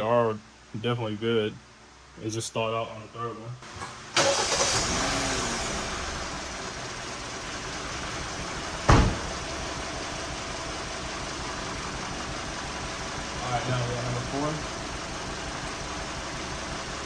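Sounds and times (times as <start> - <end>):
car engine idling with misfire: 3.6 - 17.0
sharp knock: 8.9 - 9.3.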